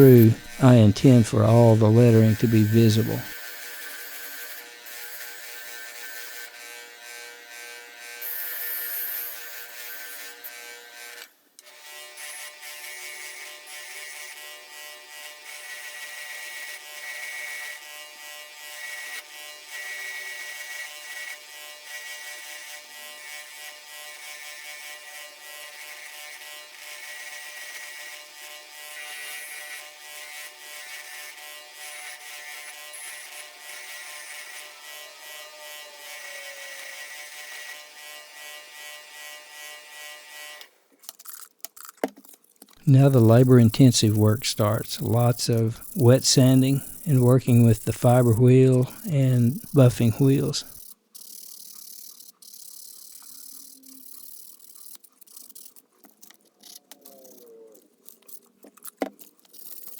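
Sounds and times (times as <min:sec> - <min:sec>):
power tool motor whining: 0:00.0 - 0:00.6, 0:43.1 - 0:50.9.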